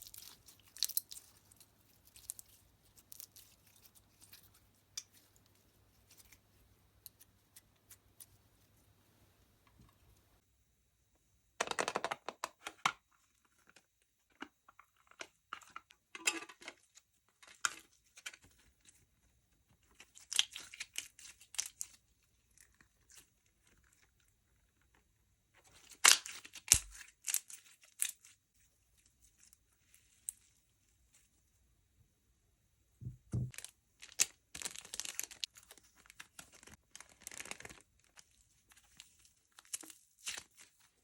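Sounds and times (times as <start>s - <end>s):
slime crackling and tearing: 0.0s - 4.4s
low thump: 33.0s - 33.5s.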